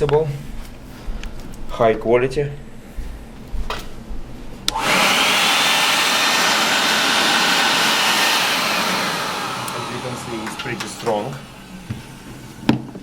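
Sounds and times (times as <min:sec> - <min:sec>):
vacuum motor whining: 0:04.7 - 0:13.0.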